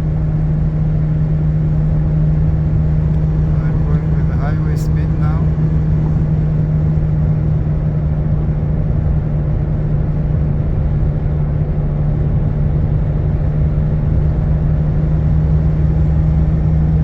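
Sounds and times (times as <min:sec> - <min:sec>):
car wheel bearing hum: 0:00.0 - 0:07.8
road rumble: 0:00.0 - 0:17.0.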